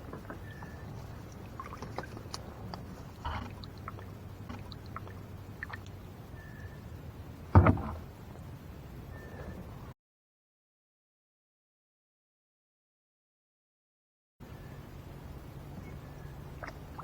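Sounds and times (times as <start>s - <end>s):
water splashing and dripping: 0.0s - 6.1s, 16.5s - 17.0s
knock against kayak hull: 7.6s - 8.0s.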